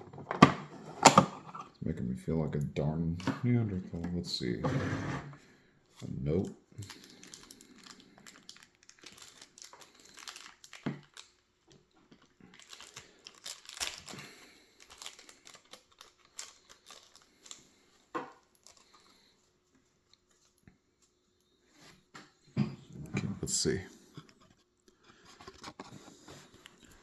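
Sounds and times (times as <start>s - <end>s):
paper crinkling and rustling: 6.8s - 17.8s, 18.4s - 20.6s.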